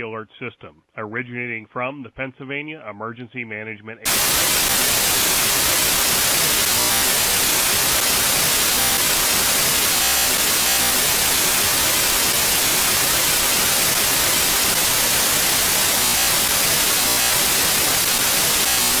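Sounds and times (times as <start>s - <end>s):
harsh static hiss: 4.1s - 19.0s.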